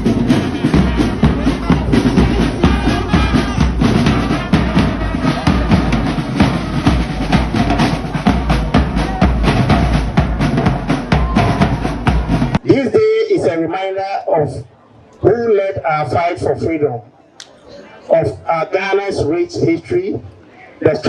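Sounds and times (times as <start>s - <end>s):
bass drum beating: 0.0s - 12.6s
snare drum beating: 0.0s - 12.6s
loud drum-driven music: 0.0s - 13.1s.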